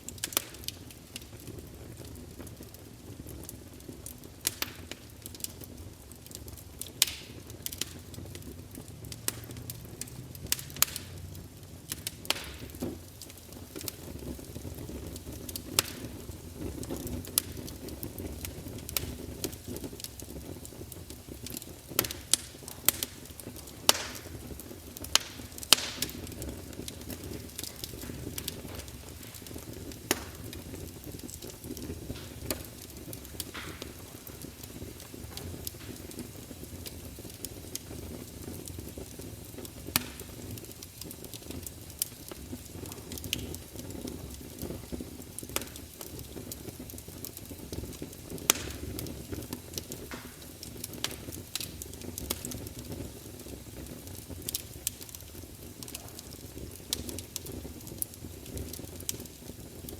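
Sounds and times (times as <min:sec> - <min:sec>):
burning wood crackling and popping: 0:00.0 - 0:59.9
low rumble of flames: 0:00.0 - 0:59.9.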